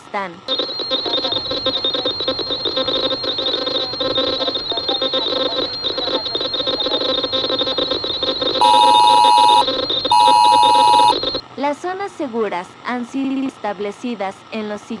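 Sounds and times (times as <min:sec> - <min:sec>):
thin steady whine: 0:00.5 - 0:11.4
two-tone emergency alert signal: 0:00.5 - 0:11.4.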